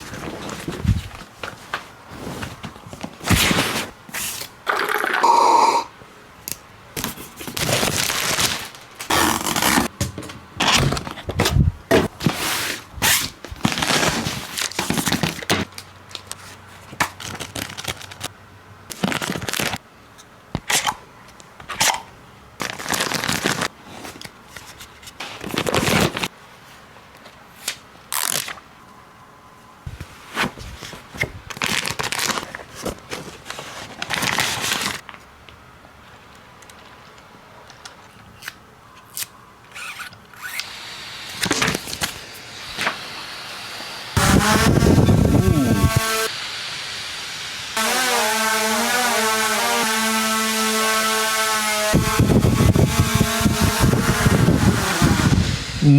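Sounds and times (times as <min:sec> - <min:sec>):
cardboard and plastic crinkling: 0:00.0 - 0:04.6, 0:07.0 - 0:18.3, 0:18.9 - 0:19.8, 0:22.6 - 0:26.3, 0:29.9 - 0:35.3.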